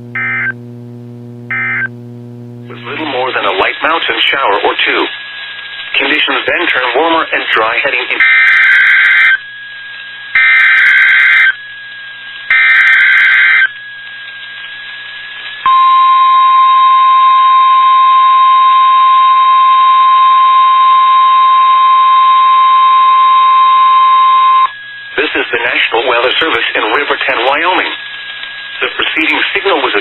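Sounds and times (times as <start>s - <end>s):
steady warning alarm tone: 0.0s - 4.0s, 8.2s - 9.5s, 10.4s - 11.6s, 12.5s - 13.8s, 15.7s - 25.2s.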